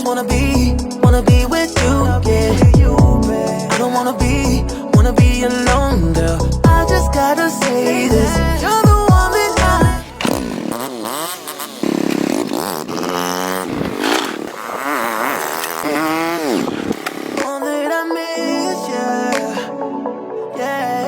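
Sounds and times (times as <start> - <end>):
motorcycle engine revving: 9.7 - 17.5.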